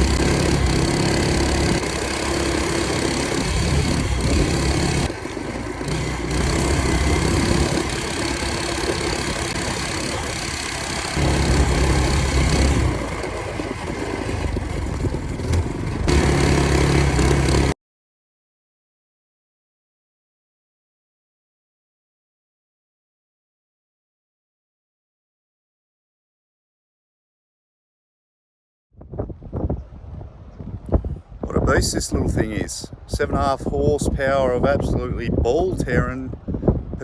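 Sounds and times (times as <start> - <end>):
mini bike engine running: 0.0 - 17.8.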